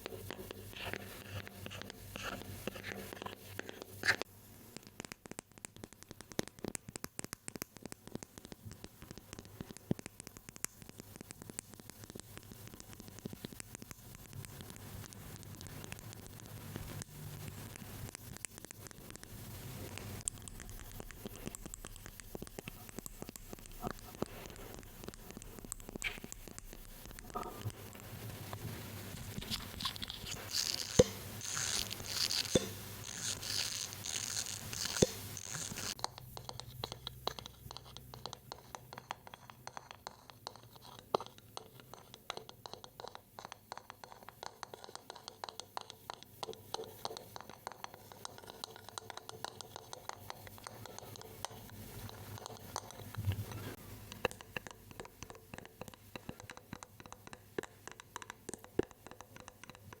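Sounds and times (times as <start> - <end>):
crinkly hissy rustling: 0.0 - 36.1
fast clicking and scratching: 0.0 - 60.0.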